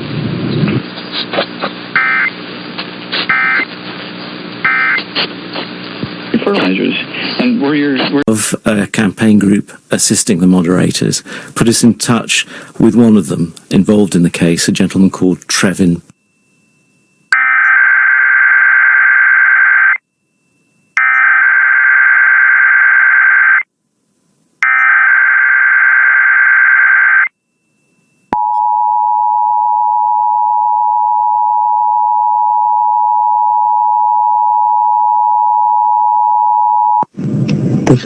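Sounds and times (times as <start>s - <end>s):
steady two-tone attention signal: 3.3s - 3.7s, 4.7s - 5.0s.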